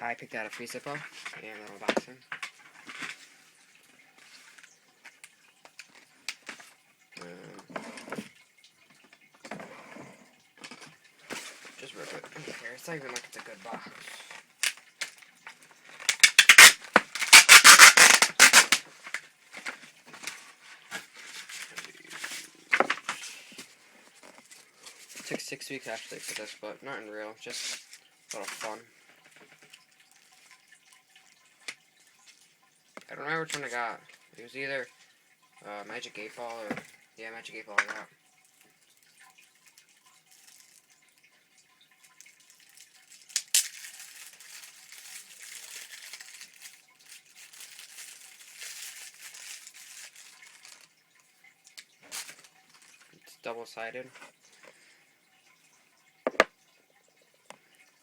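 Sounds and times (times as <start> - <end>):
packaging handling noises: 15.8 - 25.4, 42.6 - 50.9
cardboard box tearing: 16.2 - 18.8.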